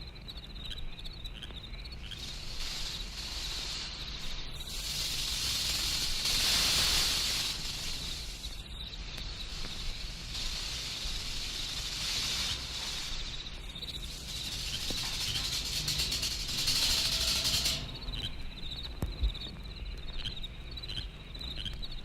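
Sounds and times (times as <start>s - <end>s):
crickets chirping: 0.0s - 22.0s
low record rumble: 0.0s - 22.0s
spooky hiss: 2.0s - 18.5s.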